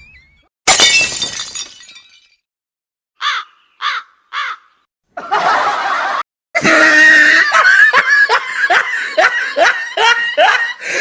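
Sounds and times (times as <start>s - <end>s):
crow cawing: 3.2s - 4.9s
loud laughter: 5.2s - 10.9s.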